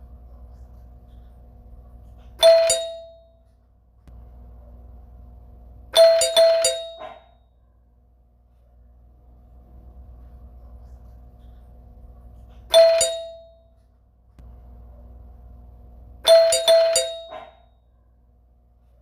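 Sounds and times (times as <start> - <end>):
faint steady hum: 0.0 - 19.0
doorbell chimes: 2.4 - 3.4, 6.0 - 7.3, 12.7 - 13.7, 16.2 - 17.6.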